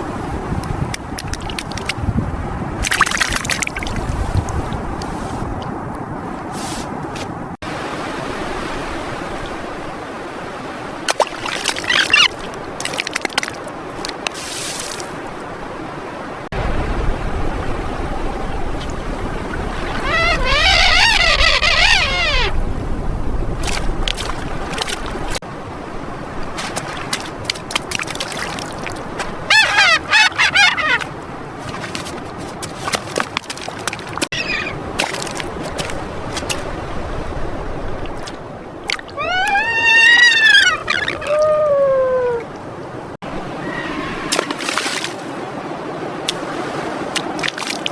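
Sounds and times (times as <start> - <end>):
surf noise: 2.3 - 33.4, 34.0 - 47.9
bird calling: 11.8 - 12.3, 19.6 - 22.7, 29.3 - 31.2, 34.3 - 34.9, 39.1 - 42.6, 43.4 - 44.7.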